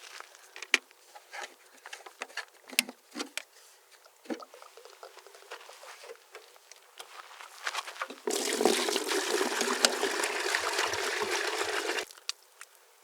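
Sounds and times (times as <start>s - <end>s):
footsteps crunching dry leaves: 5.5s - 8.2s.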